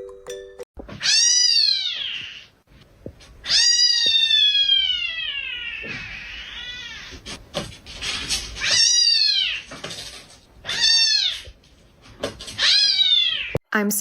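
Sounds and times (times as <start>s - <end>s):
cat meowing: 3.4s - 7.2s, 12.6s - 13.6s.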